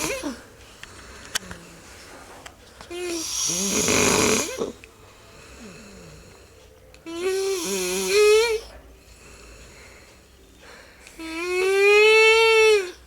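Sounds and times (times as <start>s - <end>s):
quiet breath: 0.4s - 2.4s, 4.9s - 6.9s, 8.7s - 11.3s
woman snoring with whistle: 3.0s - 4.8s, 7.1s - 8.7s, 11.2s - 13.0s.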